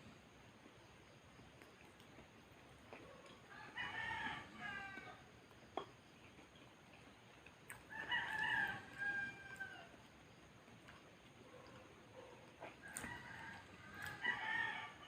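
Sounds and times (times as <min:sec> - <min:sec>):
rooster crowing: 0:03.5 - 0:05.3, 0:07.9 - 0:10.0, 0:12.8 - 0:15.0.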